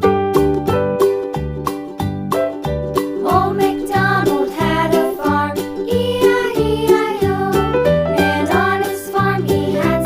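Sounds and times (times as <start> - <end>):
upbeat children's music: 0.0 - 10.0.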